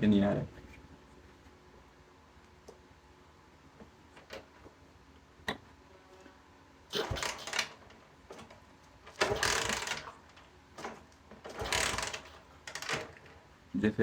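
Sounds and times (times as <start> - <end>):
mechanical rattling and scraping: 6.9 - 13.5.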